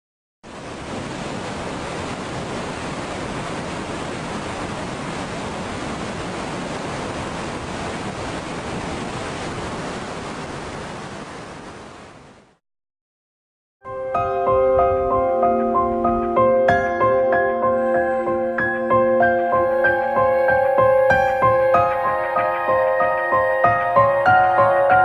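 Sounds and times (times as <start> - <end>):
steady rushing noise: 17.8 - 25.0.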